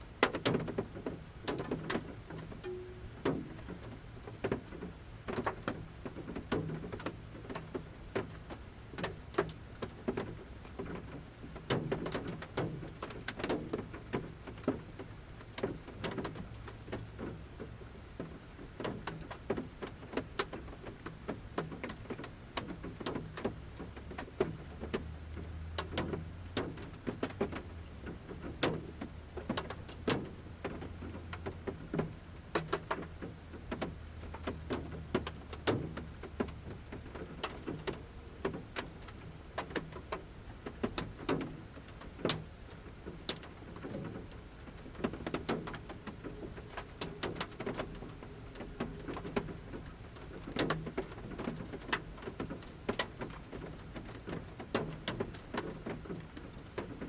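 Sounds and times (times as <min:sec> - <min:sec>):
raindrops tapping on van roof: 0:00.0 - 0:57.0
low steady rumble: 0:02.2 - 0:05.4.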